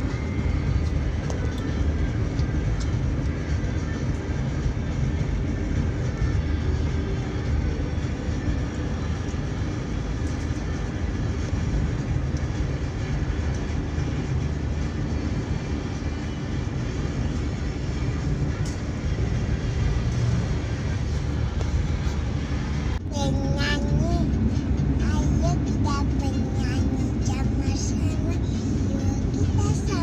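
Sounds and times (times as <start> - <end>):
car road and engine noise: 0.0 - 30.0.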